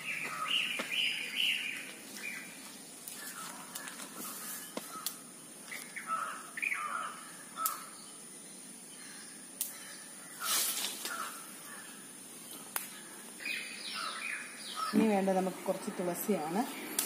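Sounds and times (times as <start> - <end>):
crows cawing: 0.1 - 1.0, 3.1 - 5.3, 5.9 - 8.0, 9.0 - 12.1.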